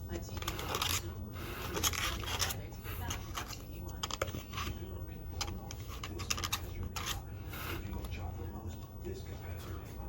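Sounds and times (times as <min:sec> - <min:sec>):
crackly clicks and scrapes: 0:00.1 - 0:08.2.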